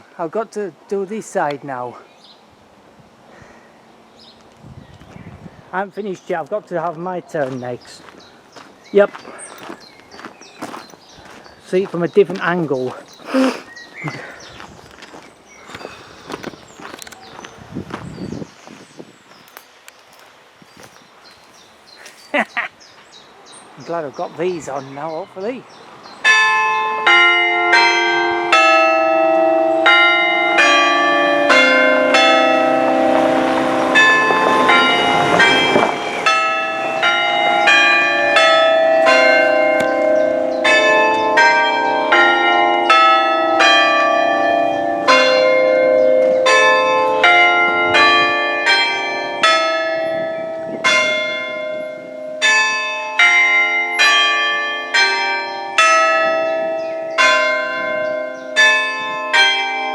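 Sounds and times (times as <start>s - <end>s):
church bells chiming: 26.2s - 59.9s.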